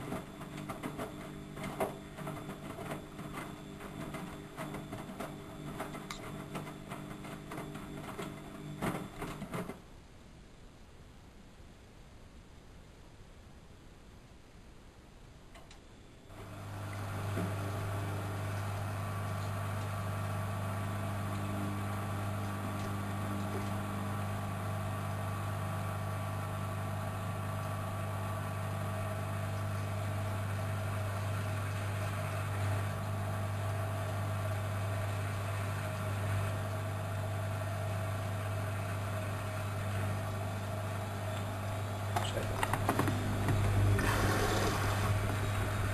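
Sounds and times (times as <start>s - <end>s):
washing machine humming: 0.0s - 9.8s, 16.2s - 45.9s.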